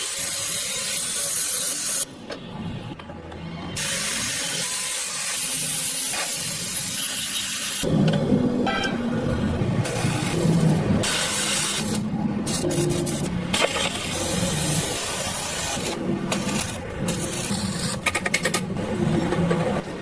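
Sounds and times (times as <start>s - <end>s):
loud hissing noise: 9.9s - 13.3s.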